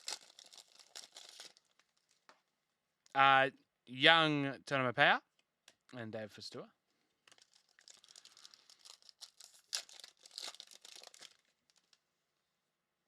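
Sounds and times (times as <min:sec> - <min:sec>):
wrapper tearing and crinkling: 0:00.0 - 0:02.3, 0:07.2 - 0:12.0.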